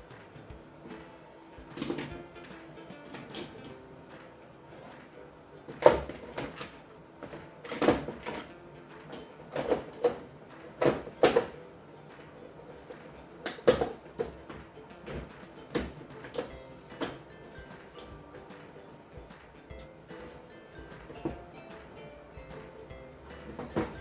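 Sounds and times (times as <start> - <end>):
plastic and metal parts knocking: 5.7 - 11.6, 19.2 - 24.0.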